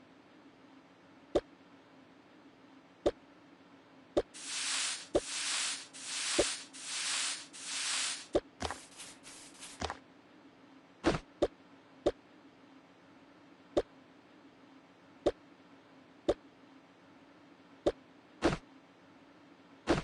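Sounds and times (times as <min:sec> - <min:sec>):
hissing swells: 0:04.4 - 0:09.8.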